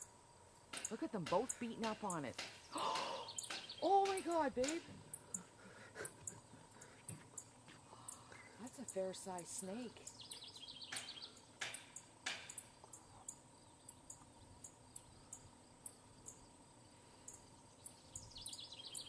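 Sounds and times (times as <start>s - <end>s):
insect chirping: 0.0s - 19.0s.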